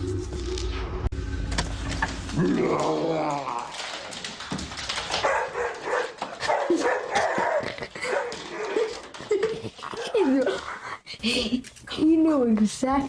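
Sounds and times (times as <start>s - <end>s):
dog barking and yipping: 5.0s - 10.6s.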